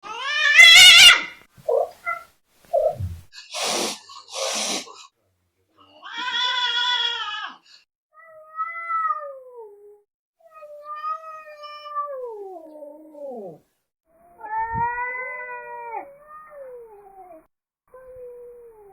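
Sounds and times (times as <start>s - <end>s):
cats yowling: 0.0s - 2.2s, 5.9s - 7.6s, 8.2s - 13.6s, 14.2s - 18.9s
cat hissing: 0.5s - 5.0s.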